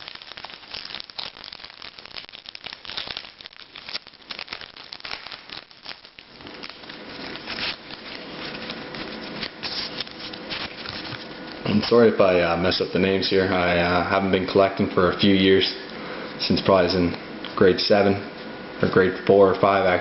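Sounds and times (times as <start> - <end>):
foil wrapper tearing and crinkling: 0.0 - 12.0.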